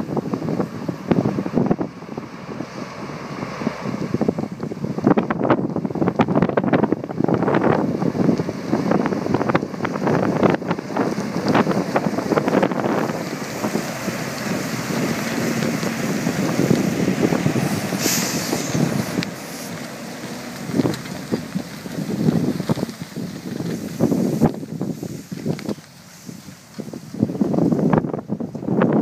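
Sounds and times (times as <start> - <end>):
truck engine running: 0.0 - 29.0
wind buffeting microphone: 0.0 - 29.0
short hiss: 17.6 - 19.8, 24.1 - 27.0.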